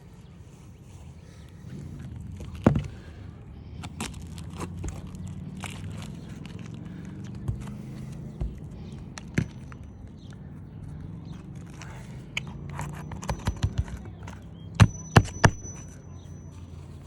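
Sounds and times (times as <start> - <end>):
thin high ring: 8.8 - 17.0
hammer tapping a nail: 12.4 - 16.0.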